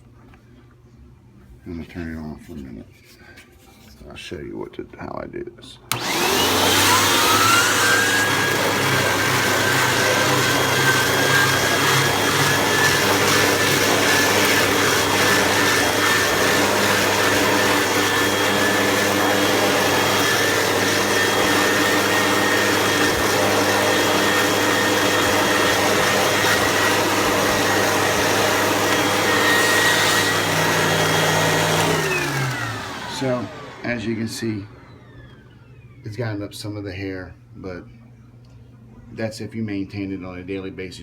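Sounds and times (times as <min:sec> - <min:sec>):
vacuum cleaner running: 0:05.9 - 0:36.4.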